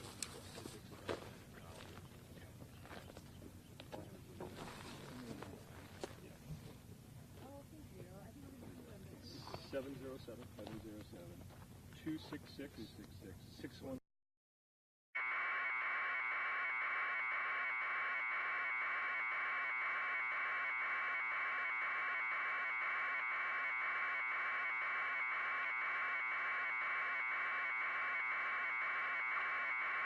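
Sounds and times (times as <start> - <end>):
pulsing electronic buzz: 15.2 - 30.0.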